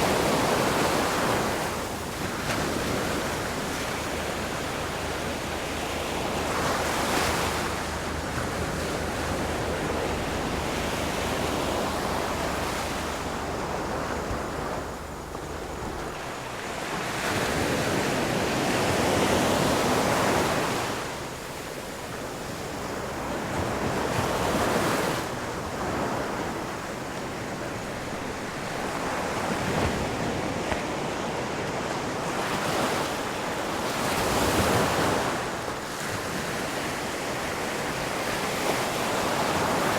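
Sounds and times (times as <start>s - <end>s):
ocean surf breaking: 0.0s - 30.2s.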